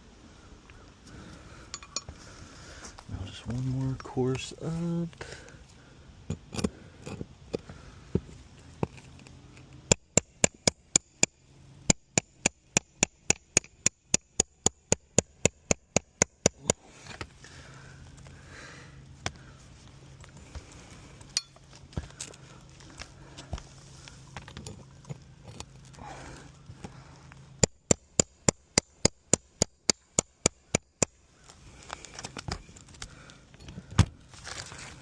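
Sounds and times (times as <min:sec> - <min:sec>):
hammer striking metal pry bar: 0:09.9 - 0:16.8, 0:21.4 - 0:21.6, 0:27.6 - 0:31.2.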